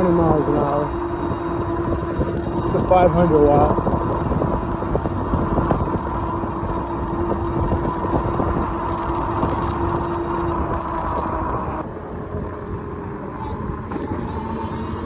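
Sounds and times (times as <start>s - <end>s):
electric motor whine: 0.0s - 15.0s
wind and road rumble: 0.0s - 15.0s.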